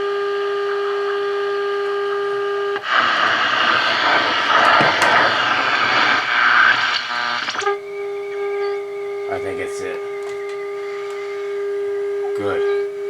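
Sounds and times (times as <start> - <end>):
loud static hiss: 0.0 - 13.0
radio test tone: 0.0 - 13.0.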